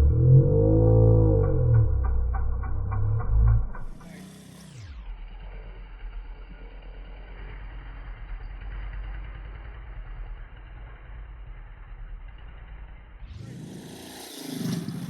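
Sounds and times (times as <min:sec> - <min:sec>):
atv engine idling: 0:00.0 - 0:15.0.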